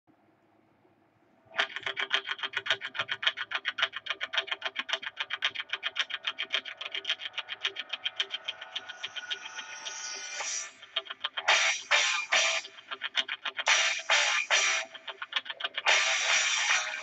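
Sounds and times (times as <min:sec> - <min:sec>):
fast pulsing intro music: 0:06.1 - 0:17.0.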